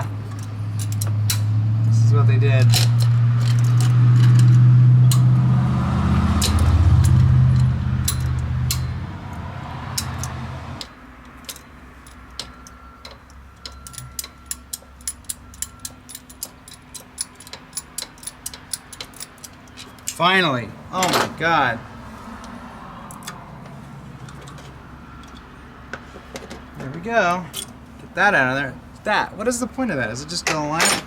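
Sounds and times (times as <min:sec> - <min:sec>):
hand ratchet clicking: 0:06.4 - 0:09.0, 0:09.9 - 0:20.2.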